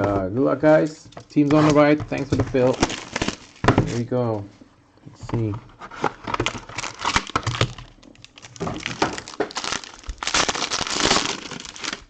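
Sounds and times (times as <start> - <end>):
cardboard box and wrapper crackling: 1.5 - 4.0, 5.4 - 12.0.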